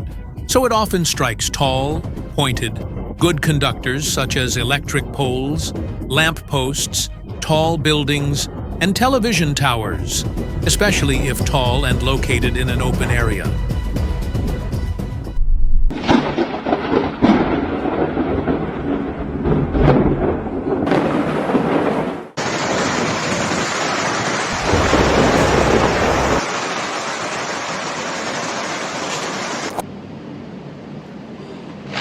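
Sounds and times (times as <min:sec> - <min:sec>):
thunder rumbling and cracking: 0:01.2 - 0:13.6, 0:15.3 - 0:27.5
heavy rain hissing: 0:22.4 - 0:29.8.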